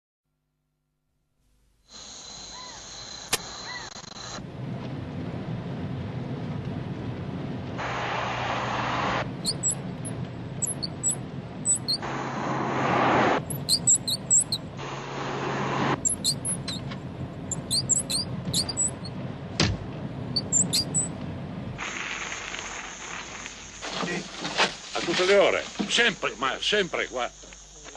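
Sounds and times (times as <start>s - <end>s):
car humming: 4.3s - 23.8s
very high squeaks: 9.4s - 12.1s, 13.4s - 14.7s, 15.9s - 16.9s, 17.5s - 19.2s, 20.3s - 21.1s.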